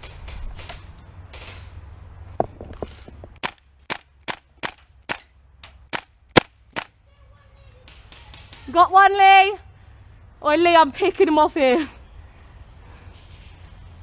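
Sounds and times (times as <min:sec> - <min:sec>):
rustling movement: 0:00.0 - 0:05.0
airsoft gun shots: 0:05.9 - 0:06.9.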